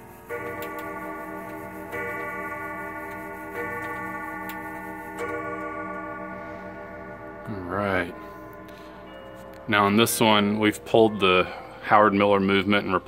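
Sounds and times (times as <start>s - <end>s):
clock striking deep note: 0.0s - 11.2s
clock ticking: 0.3s - 5.7s.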